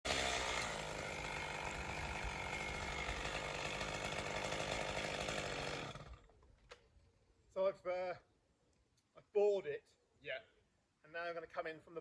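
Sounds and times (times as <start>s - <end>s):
chainsaw cutting at high revs: 0.1s - 6.3s.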